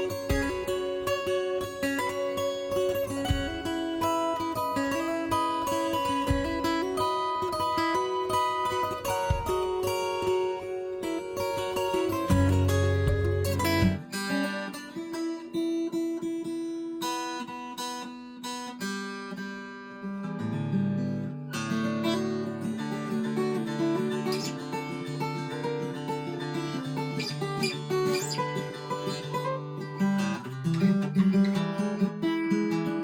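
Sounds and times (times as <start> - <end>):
acoustic guitar playing: 0.0 - 33.0.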